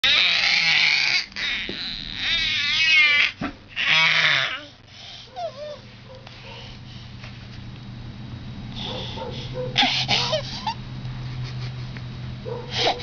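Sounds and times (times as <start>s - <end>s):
baby squealing: 0.0s - 4.7s, 9.8s - 10.8s
baby babbling coos: 0.0s - 4.8s.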